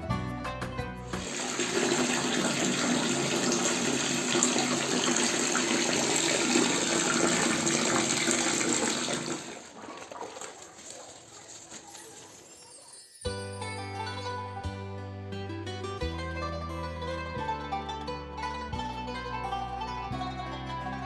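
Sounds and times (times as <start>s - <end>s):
water running: 1.2s - 13.0s.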